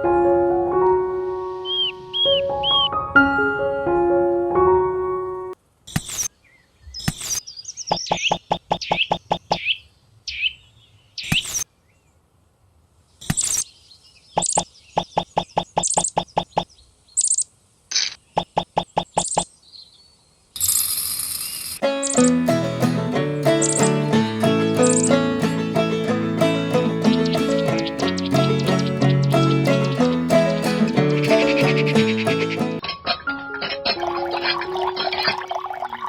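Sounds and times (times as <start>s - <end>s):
keyboard melody: 0.0s - 5.6s, 21.8s - 35.8s
birds chirping and trilling: 1.3s - 3.0s, 5.9s - 12.2s, 13.2s - 20.5s, 21.1s - 35.7s.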